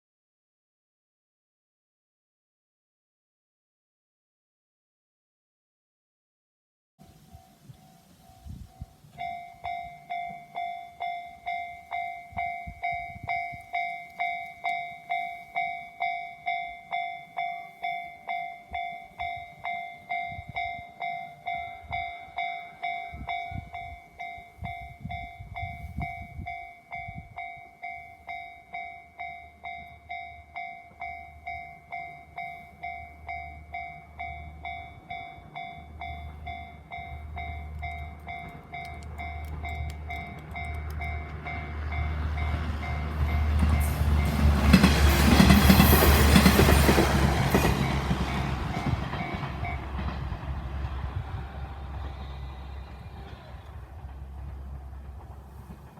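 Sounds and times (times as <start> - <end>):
level-crossing warning bell: 7.1 - 50.1
train rumbling: 7.1 - 55.9.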